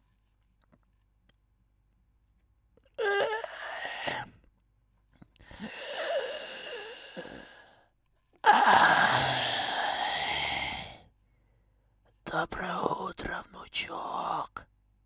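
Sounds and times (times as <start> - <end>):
man breathing loudly: 8.5 - 11.0
man groaning: 8.5 - 11.0.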